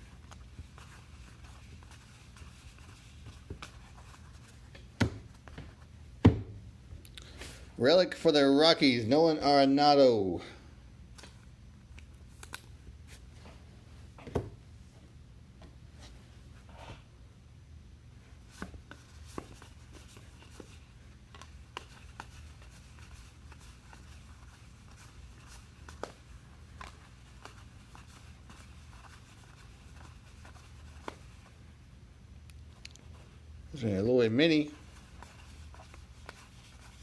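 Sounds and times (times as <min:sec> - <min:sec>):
trading cards being handled: 0:11.1 - 0:13.3, 0:18.5 - 0:31.6, 0:33.8 - 0:37.0.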